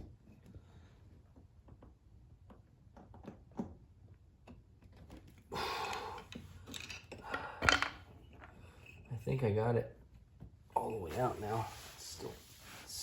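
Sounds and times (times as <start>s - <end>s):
metal tools clicking and knocking: 6.0s - 9.0s.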